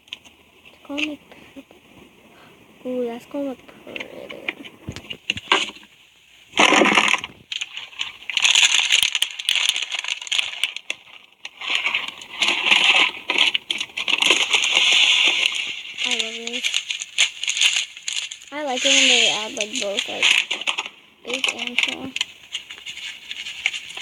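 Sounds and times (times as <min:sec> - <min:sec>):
slime crackling and popping: 0:06.5 - 0:24.0.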